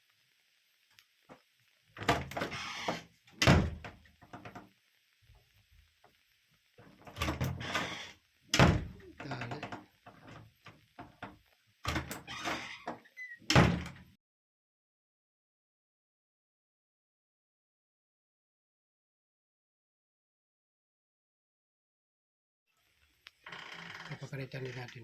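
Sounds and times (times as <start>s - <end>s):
knocks and thuds on wooden door: 3.4s - 4.0s, 8.6s - 9.0s, 13.5s - 14.0s.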